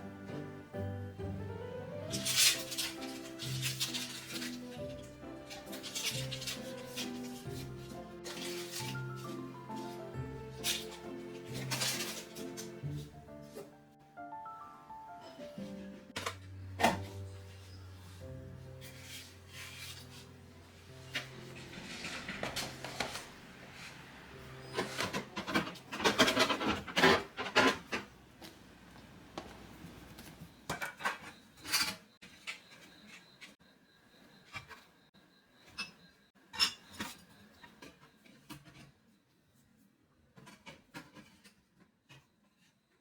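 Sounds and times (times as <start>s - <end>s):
rubbing and rustling: 2.1s - 13.8s, 17.0s - 28.1s.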